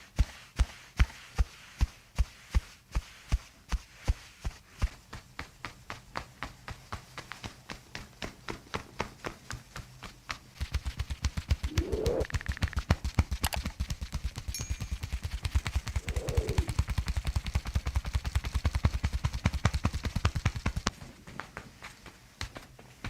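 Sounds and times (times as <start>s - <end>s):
short rising tone: 11.7s - 12.3s, 15.9s - 16.8s.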